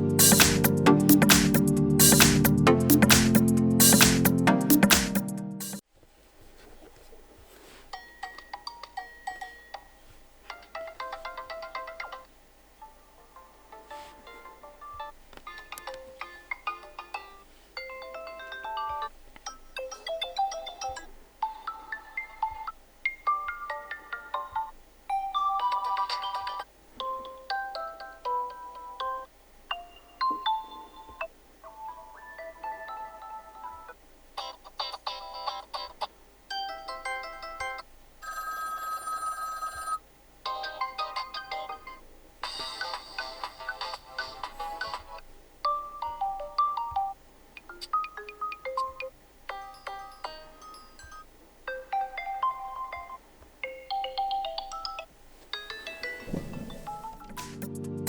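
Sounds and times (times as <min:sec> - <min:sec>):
phone ringtones: 0:38.2 - 0:40.0.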